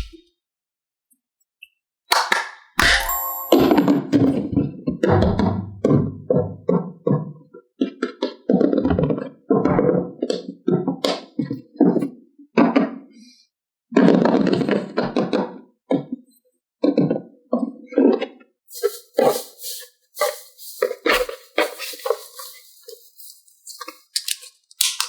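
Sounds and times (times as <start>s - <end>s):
plastic toy pieces clattering: 20.3s - 25.0s.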